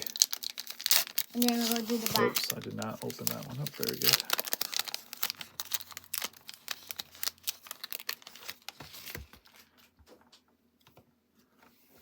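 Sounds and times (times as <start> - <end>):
wrapper crinkling and tearing: 0.0 - 9.9.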